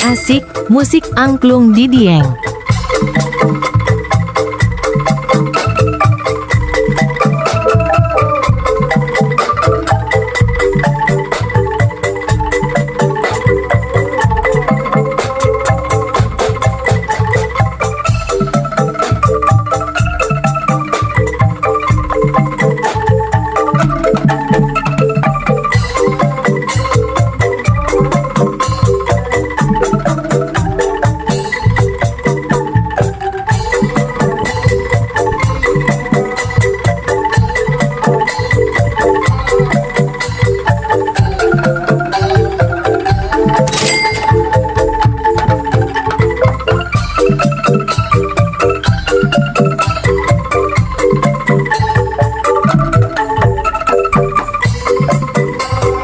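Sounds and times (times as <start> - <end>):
bouncing bass line: 0.0 - 2.5
xylophone-like notes: 0.0 - 3.4, 43.6 - 45.6.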